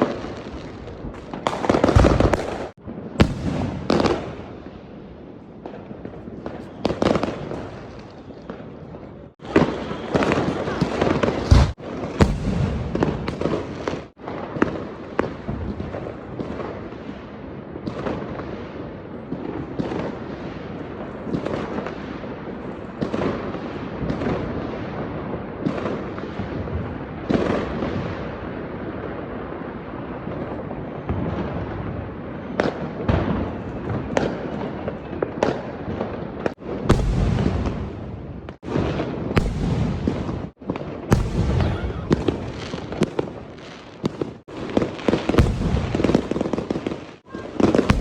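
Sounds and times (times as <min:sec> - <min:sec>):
fireworks bangs and pops: 0:00.0 - 0:04.7, 0:05.6 - 0:48.0
fireworks crackle: 0:00.0 - 0:29.4, 0:30.3 - 0:48.0.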